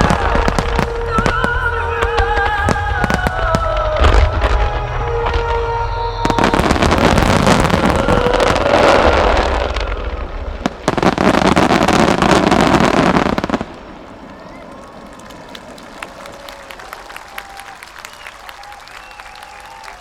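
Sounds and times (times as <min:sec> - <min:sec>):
low booming rumble: 0:00.0 - 0:14.2
fireworks bursting and crackling: 0:00.0 - 0:18.3.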